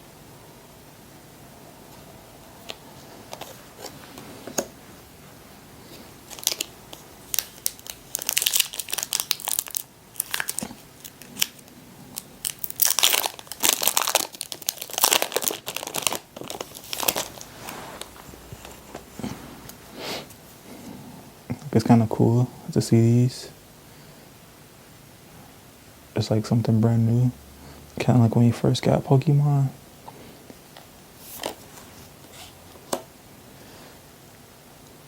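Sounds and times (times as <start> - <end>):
foil wrapper tearing and crinkling: 6.3 - 11.8, 12.4 - 18.1.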